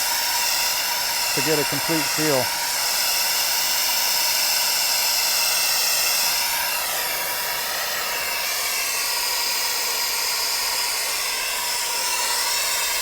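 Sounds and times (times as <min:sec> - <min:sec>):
gas torch hissing: 0:00.0 - 0:13.0.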